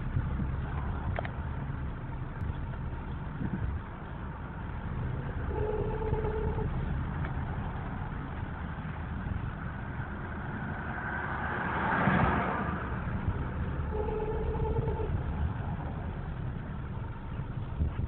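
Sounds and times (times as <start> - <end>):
gearbox whine: 0.0 - 9.0, 13.6 - 18.0
car engine low drone: 0.0 - 18.0.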